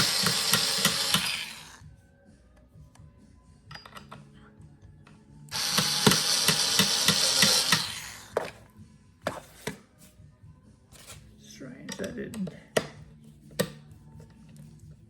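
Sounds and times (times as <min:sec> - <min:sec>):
power drill driving screw: 0:00.0 - 0:01.8, 0:05.5 - 0:08.6.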